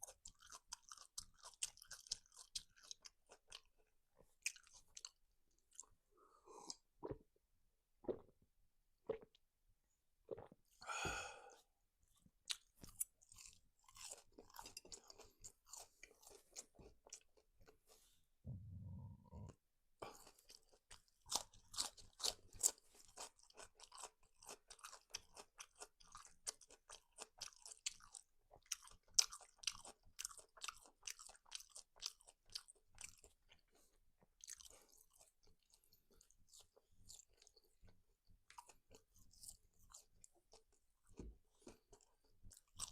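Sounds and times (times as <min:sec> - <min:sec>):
crunchy chewing: 0:00.0 - 0:03.7, 0:12.4 - 0:17.8, 0:20.1 - 0:37.7, 0:41.6 - 0:42.9
brief low rumble: 0:18.5 - 0:19.5.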